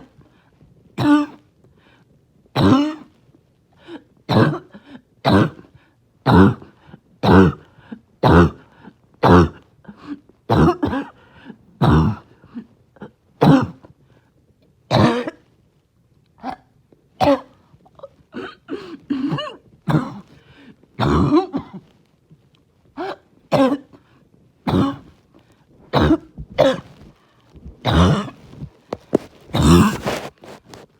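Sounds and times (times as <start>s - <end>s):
person clearing throat: 1.0s - 1.4s, 2.6s - 3.1s, 4.3s - 5.7s, 6.3s - 11.2s, 11.8s - 13.9s, 14.9s - 15.4s, 16.4s - 20.4s, 21.0s - 21.8s, 23.0s - 24.0s, 24.7s - 25.1s, 25.9s - 27.1s, 27.8s - 30.8s
person coughing harshly: 1.0s - 1.4s, 2.6s - 3.1s, 4.3s - 5.7s, 6.3s - 11.2s, 11.8s - 12.3s, 13.0s - 13.9s, 14.9s - 15.4s, 16.4s - 20.4s, 21.0s - 21.9s, 23.0s - 24.0s, 24.7s - 25.1s, 25.9s - 27.1s, 27.8s - 30.6s.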